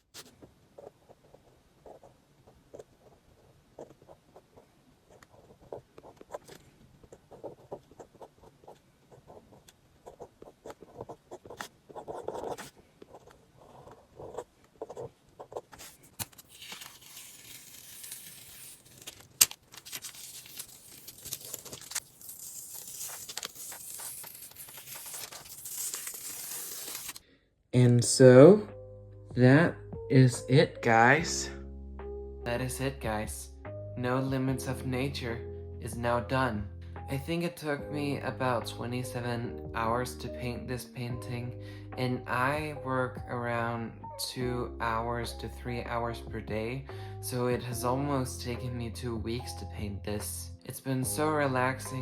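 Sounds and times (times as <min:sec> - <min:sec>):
masking tape being peeled: 0:15.8 - 0:27.2.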